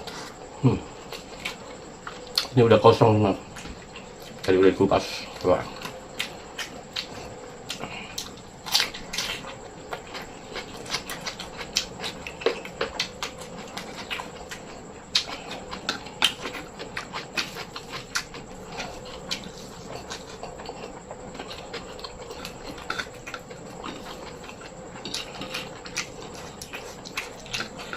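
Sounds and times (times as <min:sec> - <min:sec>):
chewing and lip smacking: 0:01.0 - 0:02.6, 0:05.2 - 0:27.9.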